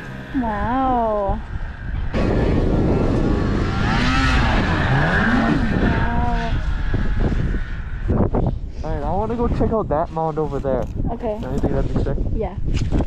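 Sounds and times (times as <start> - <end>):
snowmobile engine revving: 0.0 - 1.4, 2.2 - 8.2.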